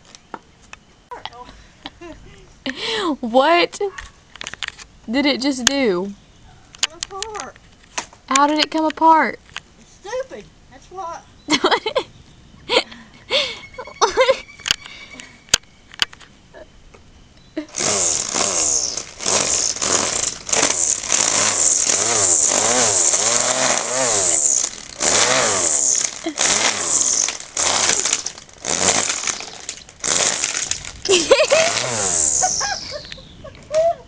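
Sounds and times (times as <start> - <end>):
string trimmer engine revving: 17.7 - 32.8.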